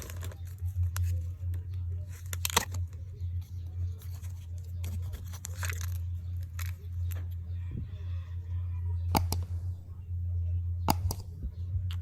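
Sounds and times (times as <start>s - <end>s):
steady low hum: 0.0s - 12.0s
plastic packaging crinkling: 4.0s - 7.2s
plastic clicks: 4.0s - 7.4s
sharp plastic snap: 9.1s - 9.5s, 10.9s - 11.3s.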